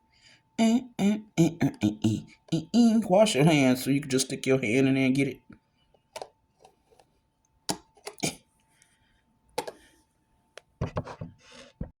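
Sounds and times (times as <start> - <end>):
dishes knocking and clinking: 9.6 - 9.8, 10.8 - 11.9.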